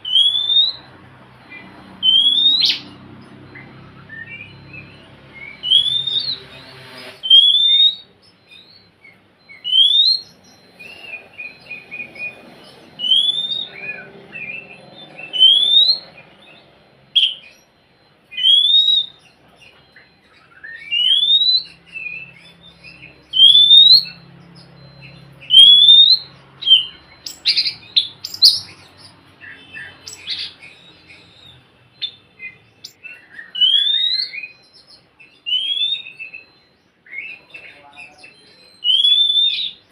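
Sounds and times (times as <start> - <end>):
bird singing rising whistle: 0.0 - 0.9, 1.5 - 39.9
bird chattering notes: 0.0 - 39.9
harsh scratchy bird notes: 1.5 - 8.1.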